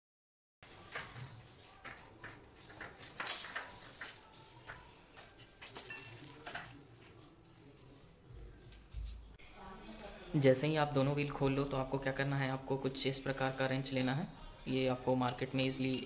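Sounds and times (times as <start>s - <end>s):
hand tools clinking on bicycle parts: 5.6s - 6.7s, 15.3s - 16.0s.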